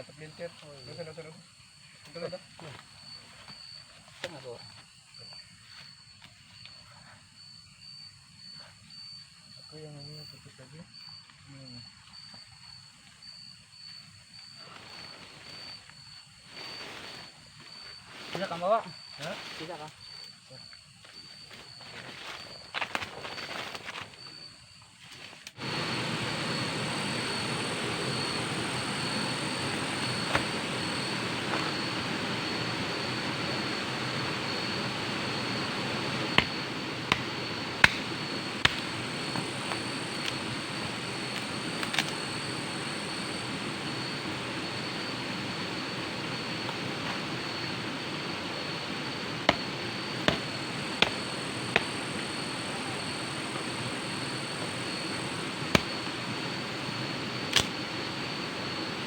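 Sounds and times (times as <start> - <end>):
waterfall rushing and splashing: 25.6 - 41.0.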